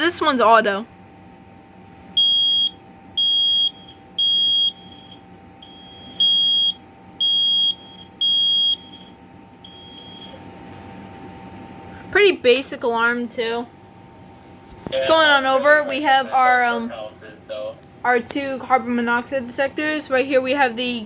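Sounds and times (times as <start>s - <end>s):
smoke alarm beeping: 2.2s - 10.4s.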